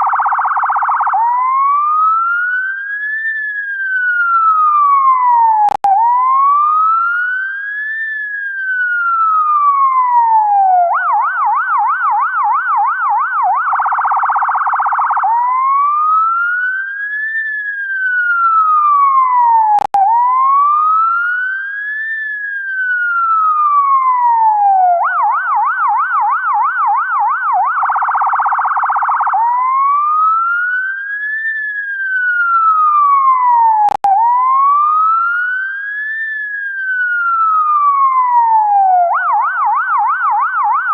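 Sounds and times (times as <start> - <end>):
ambulance siren: 0.0 - 40.9
click: 5.7 - 5.9, 33.9 - 34.1.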